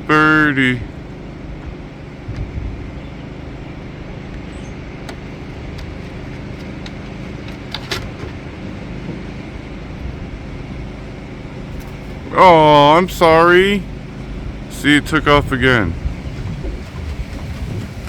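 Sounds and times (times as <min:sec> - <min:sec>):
low background hum: 0:00.0 - 0:18.0.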